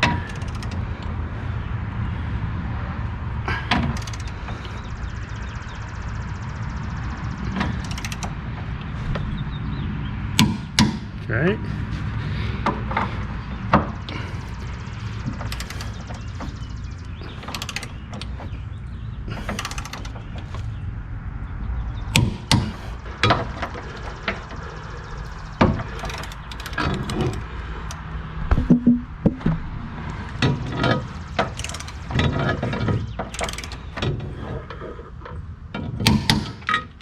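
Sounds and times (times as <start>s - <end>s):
torque wrench ratcheting: 4.0s - 4.3s, 15.4s - 16.6s, 17.2s - 18.2s, 19.4s - 20.2s, 31.5s - 32.5s, 33.3s - 33.9s.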